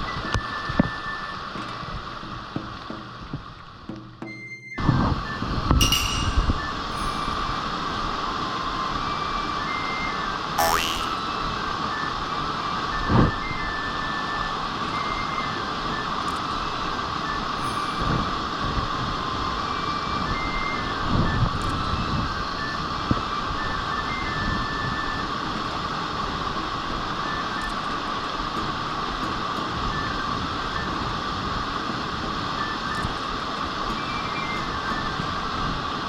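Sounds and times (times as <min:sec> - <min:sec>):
short high-pitched notes: 0:10.6 - 0:11.3.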